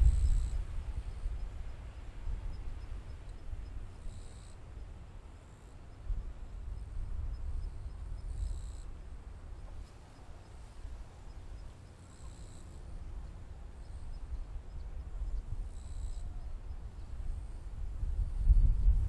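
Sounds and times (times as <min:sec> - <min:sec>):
steady low rumble: 0:00.0 - 0:19.0
faint high chirp: 0:05.9 - 0:17.6.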